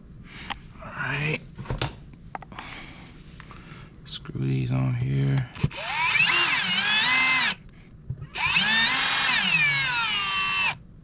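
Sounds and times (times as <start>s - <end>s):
power drill driving screws: 5.6s - 7.6s, 8.4s - 10.8s.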